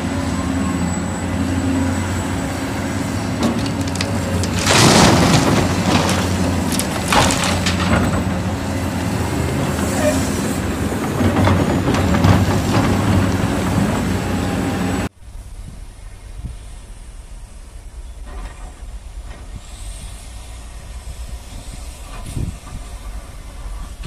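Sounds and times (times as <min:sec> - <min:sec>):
diesel earthmoving machinery running: 0:00.0 - 0:24.0
rock and steel scraping and clanking: 0:03.1 - 0:15.1.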